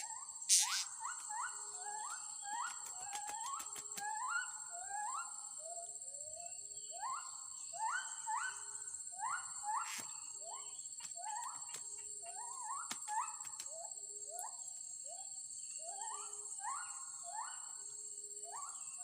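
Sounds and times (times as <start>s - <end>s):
high insect drone: 0.0s - 19.0s
chorus of short calls: 0.5s - 0.9s.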